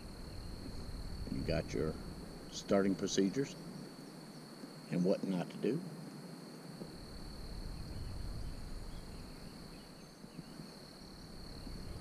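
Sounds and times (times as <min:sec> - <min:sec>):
low microphone rumble: 0:00.0 - 0:02.8, 0:06.9 - 0:09.9
crickets trilling: 0:00.0 - 0:12.0.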